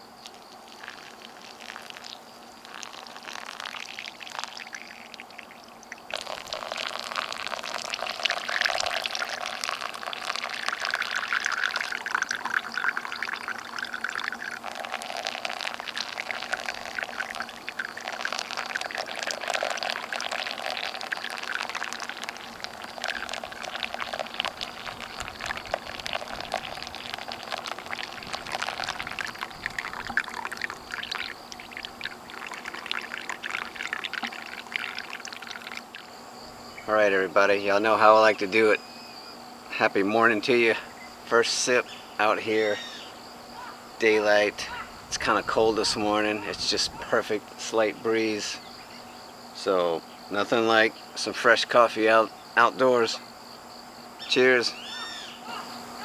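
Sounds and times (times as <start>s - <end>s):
water pouring from kettle: 0.2s - 36.2s.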